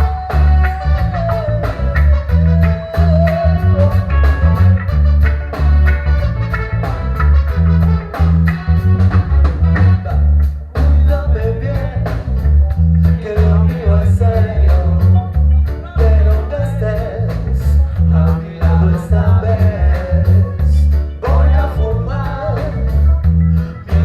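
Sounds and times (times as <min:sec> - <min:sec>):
guitar chops: 0:00.0 - 0:17.6
deep pulsing bass line: 0:00.0 - 0:24.0
reggae band playing: 0:00.0 - 0:24.0.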